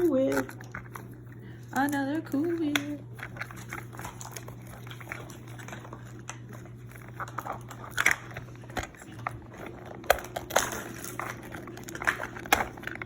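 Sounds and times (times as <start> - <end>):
plastic packaging crinkling: 0.0 - 13.0
steady low hum: 0.0 - 13.0.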